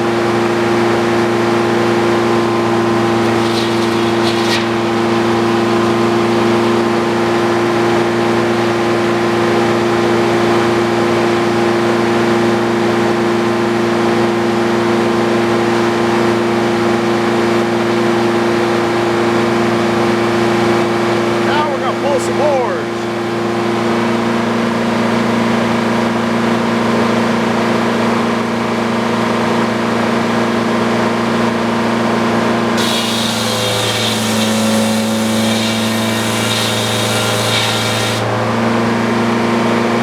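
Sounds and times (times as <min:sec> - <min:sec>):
sawmill humming: 0:02.2 - 0:07.4, 0:32.8 - 0:38.8.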